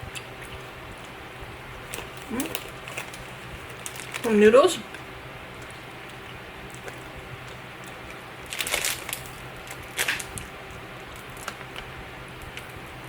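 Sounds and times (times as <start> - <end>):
gummy candy crackling: 1.9 - 4.8, 5.7 - 12.8.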